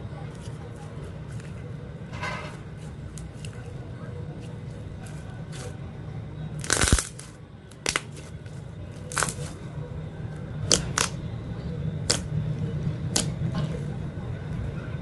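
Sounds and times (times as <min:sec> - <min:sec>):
slime popping and squelching: 0:06.6 - 0:08.1.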